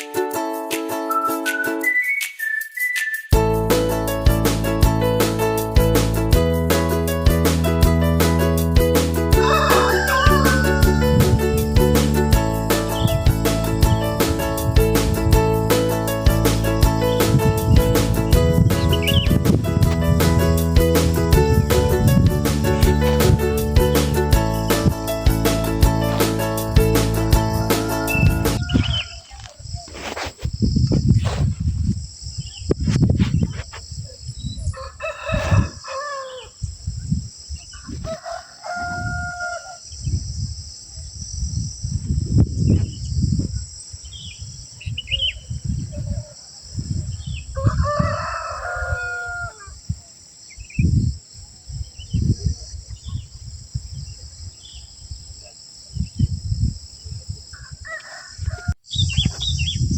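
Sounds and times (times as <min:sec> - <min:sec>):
low rumbles: 0:10.8 - 0:28.6.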